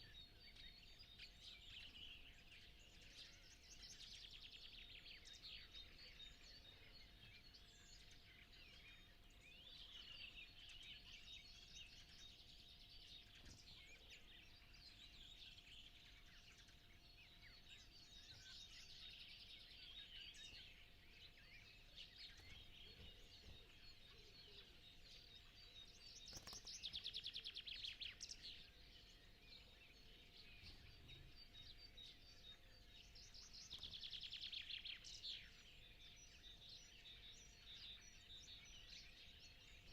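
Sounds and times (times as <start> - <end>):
songbirds singing: 0.0 - 39.9
rapid bird trill: 25.4 - 27.6.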